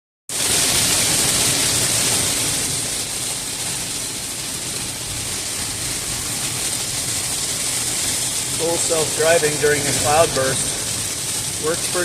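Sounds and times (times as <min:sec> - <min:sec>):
heavy rain and hail on car: 0:00.3 - 0:12.0.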